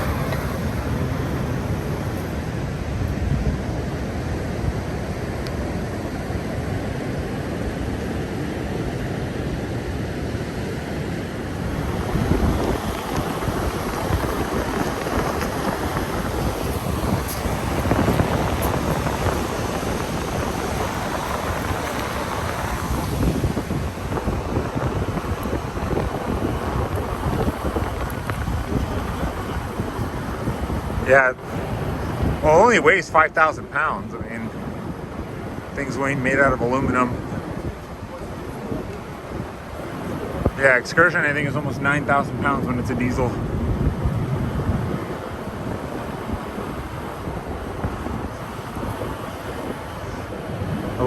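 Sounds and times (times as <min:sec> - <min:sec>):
truck driving over sand: 0:00.0 - 0:04.6, 0:10.5 - 0:37.8
wind noise on microphone: 0:00.0 - 0:51.0.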